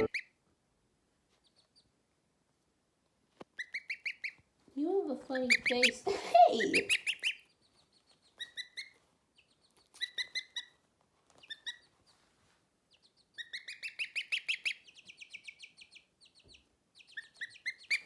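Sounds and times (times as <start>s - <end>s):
baby bird peeping: 0.0s - 0.3s, 3.6s - 4.4s, 5.3s - 12.2s, 12.9s - 18.0s.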